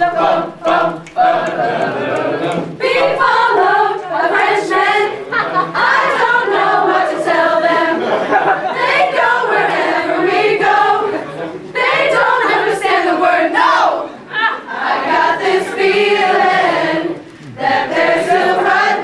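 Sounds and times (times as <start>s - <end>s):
group of people singing in unison: 0.0s - 19.0s.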